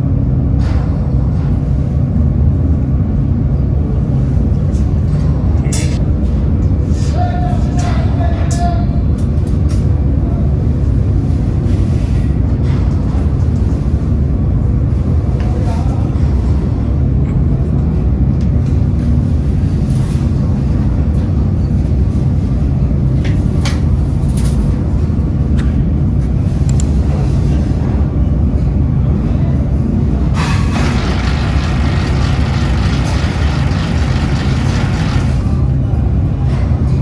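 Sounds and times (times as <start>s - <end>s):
heavy factory machinery rumbling: 29.4s - 37.0s.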